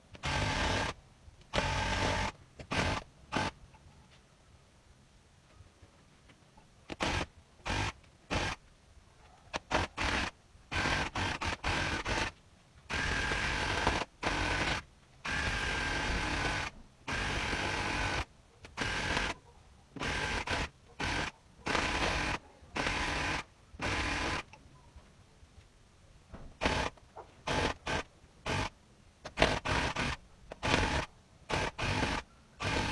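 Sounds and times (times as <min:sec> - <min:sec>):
electric handheld tool bursts: 0:00.2 - 0:03.6, 0:06.9 - 0:08.6, 0:09.6 - 0:19.4, 0:20.0 - 0:24.5, 0:26.6 - 0:28.7, 0:29.4 - 0:32.9.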